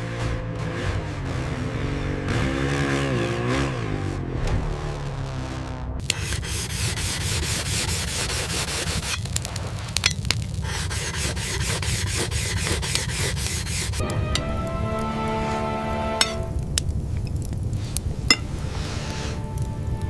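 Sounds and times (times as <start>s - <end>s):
rhythmic scraping strokes: 6.0s - 9.3s, 10.6s - 16.6s.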